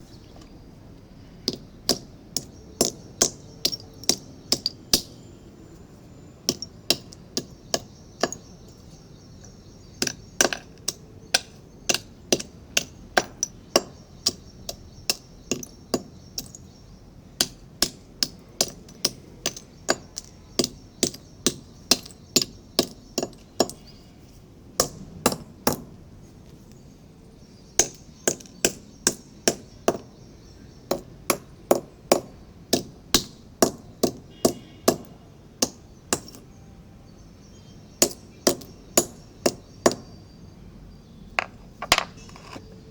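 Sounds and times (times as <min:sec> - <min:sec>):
clay pot breaking: 0:41.4 - 0:42.6.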